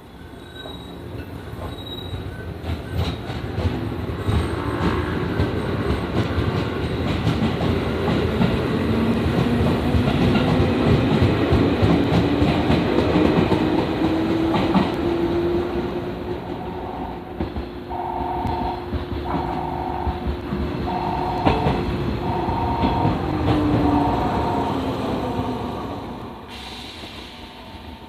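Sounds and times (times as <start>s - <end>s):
electric train passing: 0.0s - 28.0s
train motor whine: 17.9s - 24.8s.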